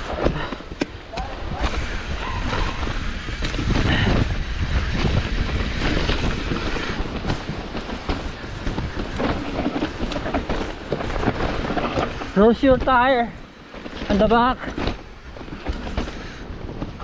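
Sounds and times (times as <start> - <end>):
bike rattling over rough ground: 0.0 - 17.0
tyre noise on dirt: 0.0 - 17.0
wind rush on microphone: 0.0 - 17.0.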